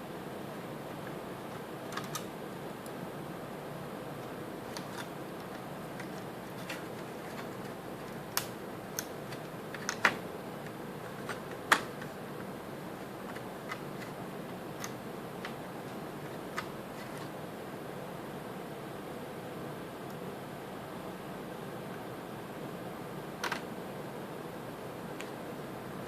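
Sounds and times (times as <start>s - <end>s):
plastic parts clicking and tapping: 4.7s - 12.2s.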